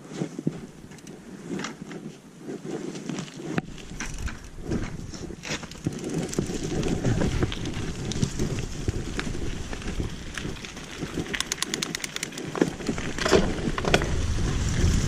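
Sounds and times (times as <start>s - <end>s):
bike tyres rumbling on trail: 0.0s - 15.0s
bike rattling clicks: 0.6s - 2.0s, 3.2s - 14.2s
wind buffeting microphone: 3.5s - 15.0s.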